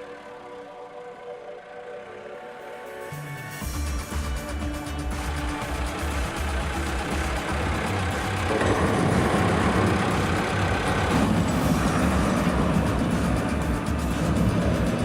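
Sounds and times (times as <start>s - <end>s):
truck engine running: 3.7s - 15.0s.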